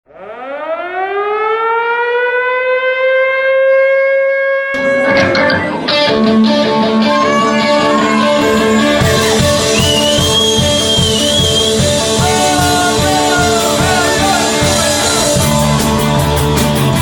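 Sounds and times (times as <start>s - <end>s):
electric guitar note sliding up: 4.7s - 16.3s
rock band with drums: 4.8s - 17.0s.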